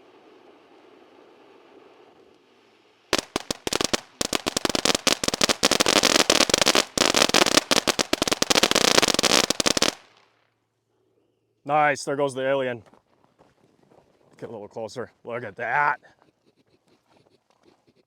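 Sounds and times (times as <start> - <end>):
firework fountain crackling pops: 0.0 - 10.4.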